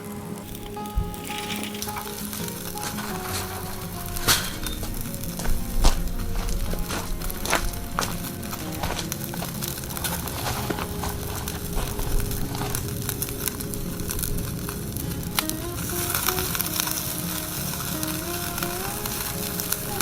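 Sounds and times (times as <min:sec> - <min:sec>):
background music: 0:00.0 - 0:20.0
fat crackling on coals: 0:00.0 - 0:20.0
skewers sizzling over charcoal: 0:00.0 - 0:20.0.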